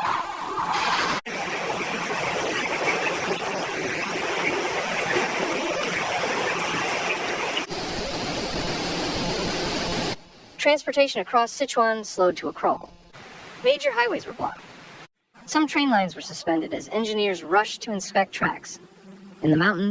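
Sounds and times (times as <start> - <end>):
floodwater rushing: 0.7 - 10.2.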